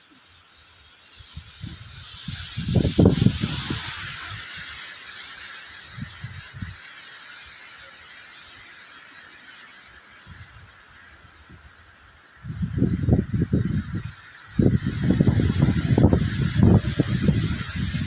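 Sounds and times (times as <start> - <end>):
heavy rain hissing: 0.0 - 18.0
wind buffeting microphone: 1.4 - 4.8, 12.4 - 18.0.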